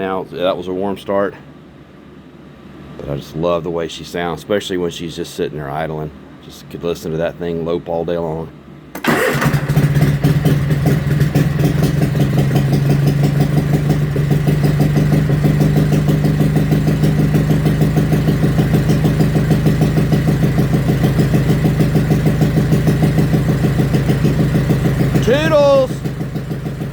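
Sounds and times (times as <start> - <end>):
mower engine idling: 9.0 - 26.9.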